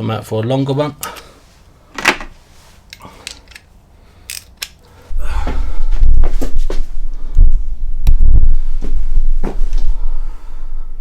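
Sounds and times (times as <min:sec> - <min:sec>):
metal sockets clinking: 0:02.9 - 0:03.7, 0:04.3 - 0:04.8
loud low rumble with thumps: 0:05.1 - 0:10.3.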